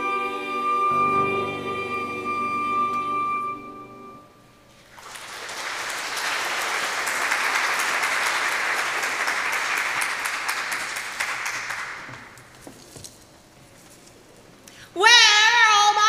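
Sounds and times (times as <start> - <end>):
audience applauding: 4.8 - 12.4.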